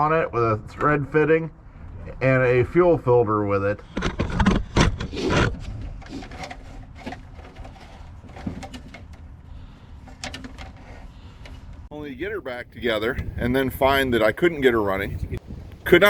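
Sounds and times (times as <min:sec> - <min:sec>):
tools knocking and clattering: 0:06.0 - 0:09.2, 0:10.1 - 0:10.9.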